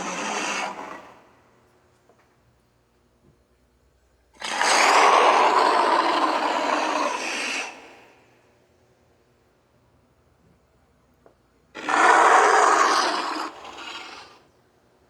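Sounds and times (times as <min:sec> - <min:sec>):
creature roar: 0:00.0 - 0:01.1, 0:04.4 - 0:07.8, 0:11.8 - 0:14.4.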